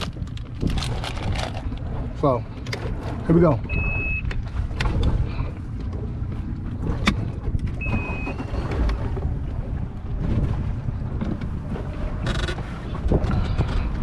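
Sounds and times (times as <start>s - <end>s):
wind noise: 0.0s - 5.6s, 6.3s - 14.0s
hull knocking on waves: 0.0s - 14.0s
motorboat engine rumble: 0.0s - 14.0s
high beep: 3.7s - 4.2s, 7.8s - 8.6s.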